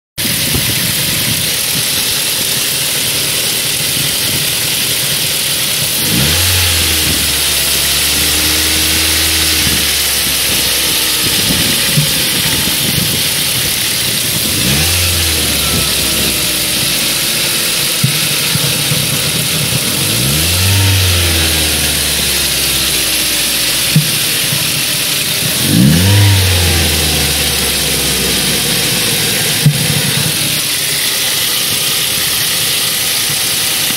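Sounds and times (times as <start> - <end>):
car engine idling and revving: 0.2 - 33.9
intake flaps rattling: 3.6 - 30.7.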